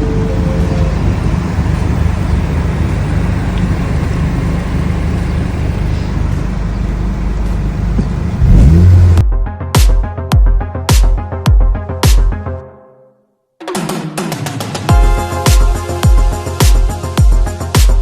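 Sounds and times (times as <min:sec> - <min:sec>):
car engine drone: 0:00.0 - 0:09.2
road noise: 0:00.0 - 0:09.2.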